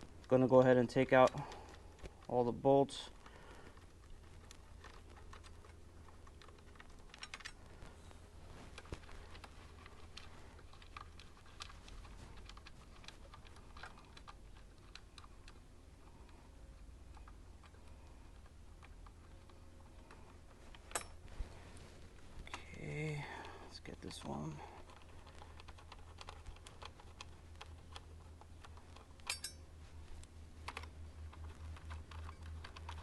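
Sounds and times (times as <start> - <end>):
low steady hum: 0.0 - 33.0
hand tools clicking on metal: 29.2 - 29.6.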